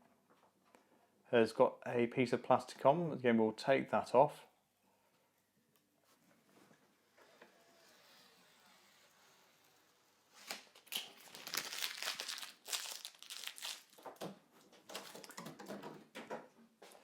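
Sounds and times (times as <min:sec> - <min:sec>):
plastic film crinkling and tearing: 0:10.3 - 0:14.3, 0:14.9 - 0:15.4.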